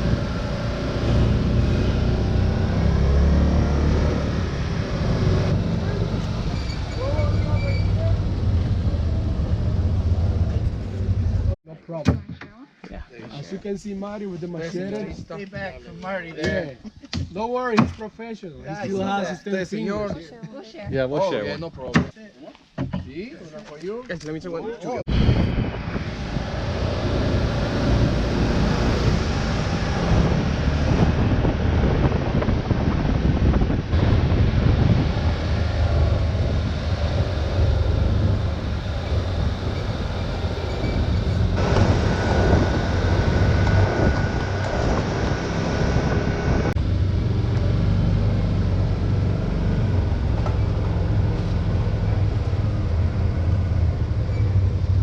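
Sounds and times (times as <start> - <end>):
road noise rushing: 0.0 - 11.6, 25.0 - 55.0
vehicle engine rumble: 0.0 - 11.6, 25.0 - 55.0.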